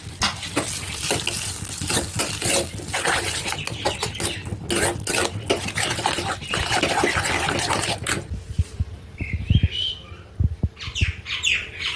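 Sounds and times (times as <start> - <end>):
kitchen clattering and scraping: 0.0 - 8.3.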